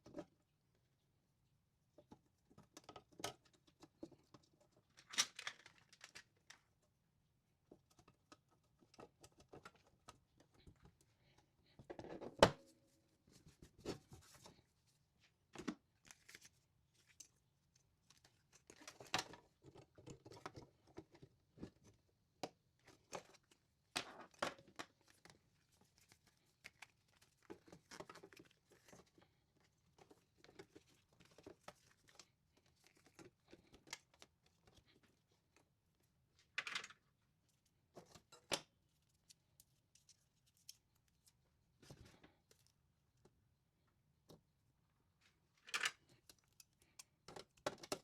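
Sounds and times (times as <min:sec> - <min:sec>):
clicks of small parts handled: 0:45.6 - 0:48.0.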